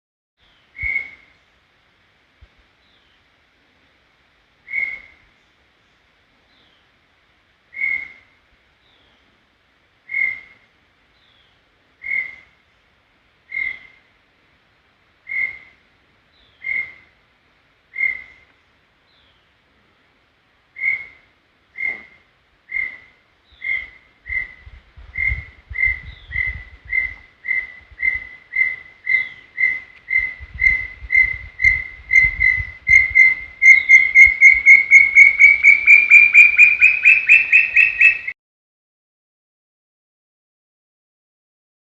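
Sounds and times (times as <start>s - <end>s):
bird whistled notes: 25.2s - 38.3s.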